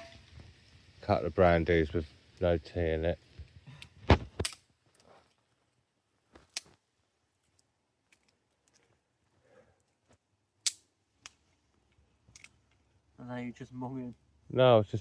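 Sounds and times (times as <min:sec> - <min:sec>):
wood fire popping: 0:00.0 - 0:06.8.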